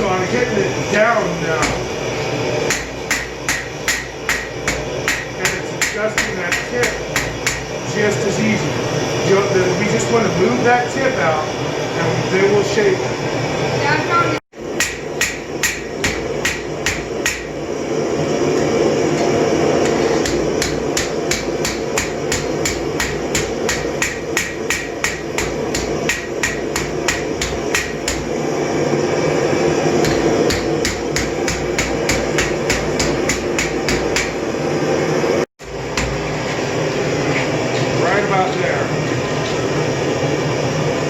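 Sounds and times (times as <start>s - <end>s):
hammer striking steel on anvil: 1.6s - 1.9s, 2.7s - 7.8s, 14.7s - 17.6s, 19.2s - 28.4s, 30.0s - 34.4s, 35.6s - 36.3s.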